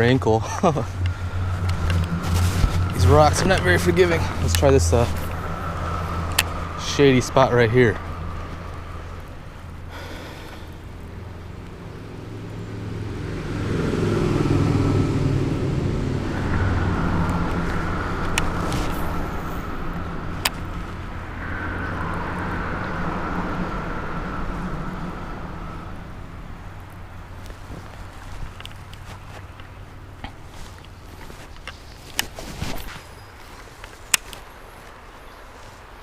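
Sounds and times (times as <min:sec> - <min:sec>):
motor vehicle passing: 0:00.0 - 0:36.0.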